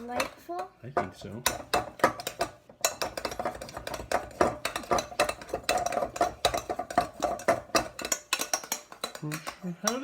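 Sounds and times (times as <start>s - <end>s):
utensils clinking and scraping bowls: 0.0s - 10.0s.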